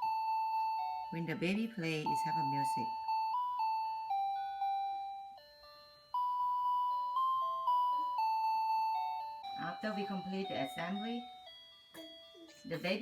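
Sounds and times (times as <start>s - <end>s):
electronic toy melody of beeps: 0.0s - 13.0s.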